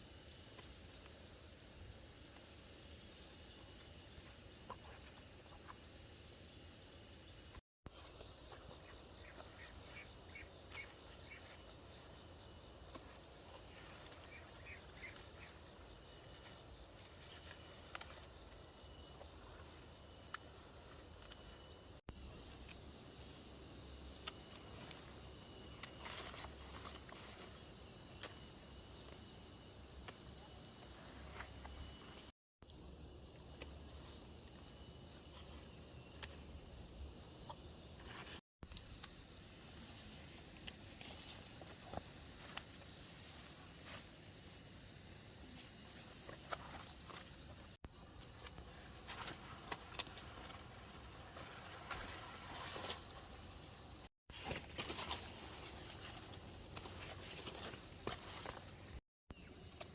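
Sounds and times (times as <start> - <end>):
insects trilling: 0.0 - 59.9
small chirps: 12.8 - 15.6.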